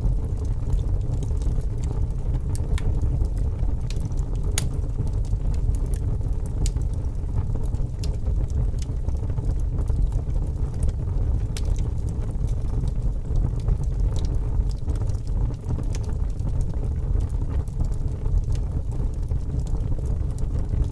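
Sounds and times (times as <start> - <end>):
fire crackling and popping: 0.0 - 20.9
fire rumbling: 0.0 - 20.9.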